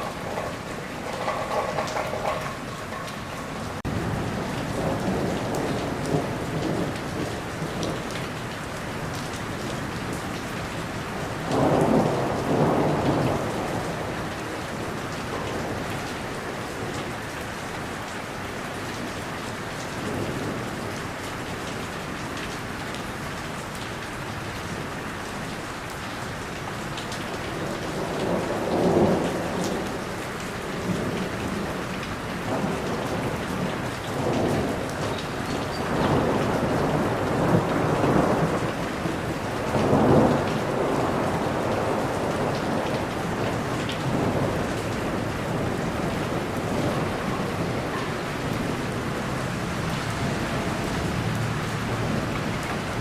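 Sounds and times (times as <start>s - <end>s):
thunder rumbling: 0.0s - 8.4s, 11.4s - 17.1s, 27.6s - 53.0s
steady rain falling: 0.0s - 53.0s.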